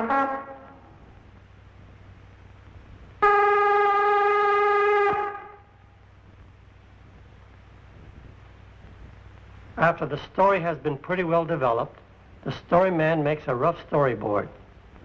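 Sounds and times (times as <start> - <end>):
cartoon brass music: 0.0 - 0.9, 3.2 - 5.6
long steady horn note: 0.0 - 1.3, 3.2 - 6.1.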